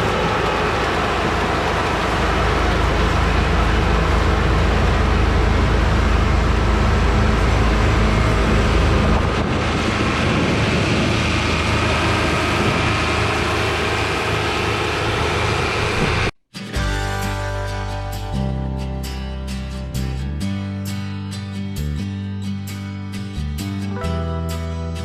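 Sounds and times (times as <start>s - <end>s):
combine harvester drone: 0.0s - 16.3s.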